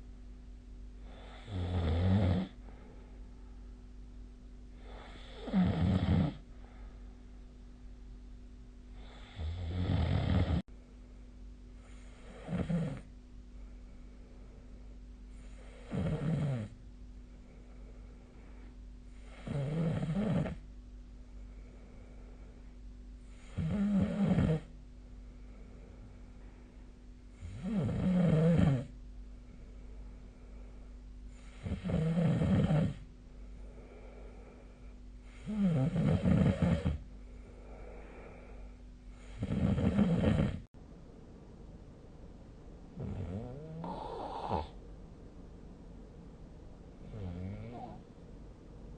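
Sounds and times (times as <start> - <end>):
faint steady hum: 0.0 - 48.9
breathing: 1.0 - 1.5, 2.5 - 3.8, 4.7 - 5.5, 6.4 - 7.5, 8.9 - 9.6, 10.6 - 12.5, 13.5 - 15.9, 17.2 - 19.5, 21.1 - 23.6, 25.0 - 27.6, 29.3 - 31.8, 32.9 - 35.6, 37.0 - 39.6
person snoring: 1.0 - 2.6, 4.8 - 6.4, 9.0 - 10.6, 11.9 - 13.1, 15.4 - 16.8, 19.1 - 20.6, 23.3 - 24.7, 27.4 - 29.0, 31.4 - 33.0, 35.3 - 37.0, 37.6 - 40.7, 43.0 - 44.8, 47.0 - 48.0.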